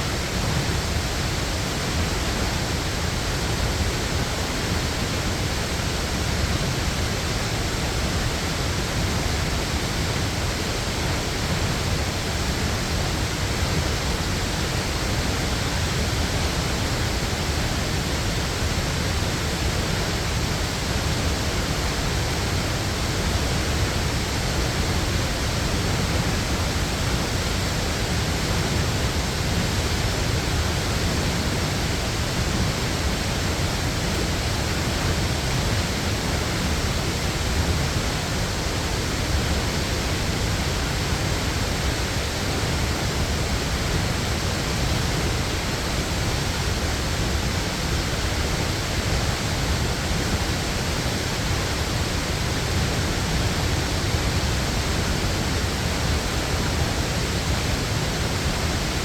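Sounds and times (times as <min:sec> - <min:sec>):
waterfall rushing: 0:00.1 - 0:59.0.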